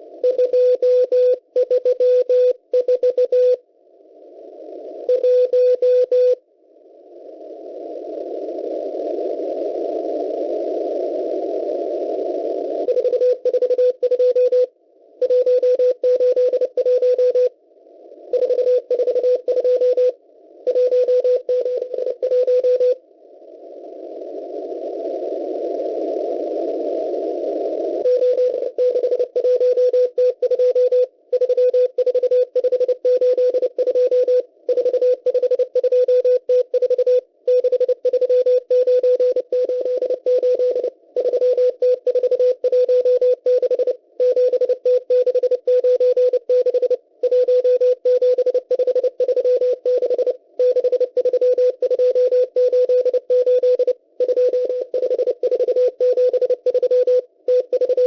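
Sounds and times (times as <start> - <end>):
morse code tone: 0.2 - 3.6, 5.1 - 6.4, 12.9 - 17.5, 18.3 - 23.0, 28.0 - 58.0.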